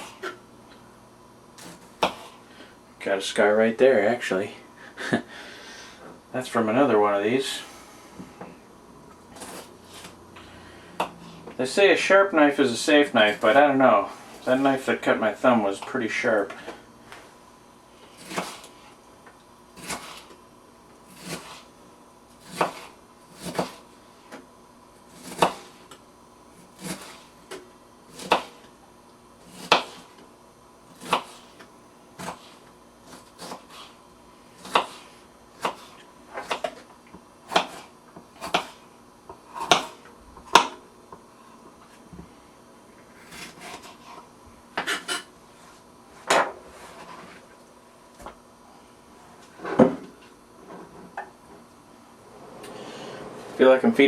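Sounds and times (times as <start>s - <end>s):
knife chopping on cutting board: 1.6s - 2.4s, 18.2s - 18.8s, 19.8s - 20.3s, 21.1s - 21.7s, 22.4s - 23.8s, 25.2s - 25.8s, 26.8s - 28.7s, 29.5s - 30.1s, 31.0s - 31.6s, 32.2s - 33.9s, 34.6s - 36.8s, 37.4s - 38.8s, 39.4s - 40.8s.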